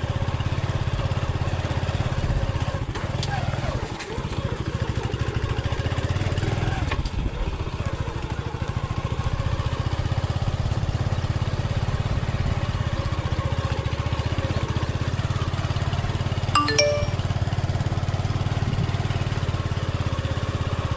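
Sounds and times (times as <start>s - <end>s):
motorcycle engine running: 0.0s - 16.2s.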